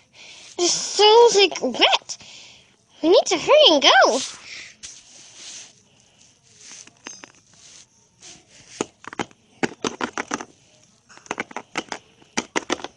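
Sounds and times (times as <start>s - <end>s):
small hard objects clicking: 8.8s - 12.9s.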